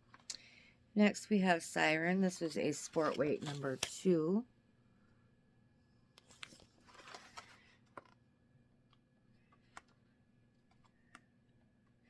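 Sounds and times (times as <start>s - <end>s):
book page turning: 2.8s - 4.0s, 6.2s - 8.1s
faint clicks handling book: 6.1s - 8.2s, 8.9s - 10.0s
paper rustle: 6.2s - 8.1s.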